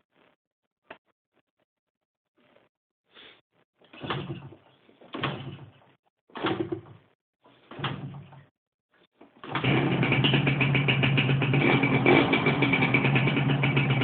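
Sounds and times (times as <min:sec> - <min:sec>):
motorcycle engine turning over: 0:09.4 - 0:14.0.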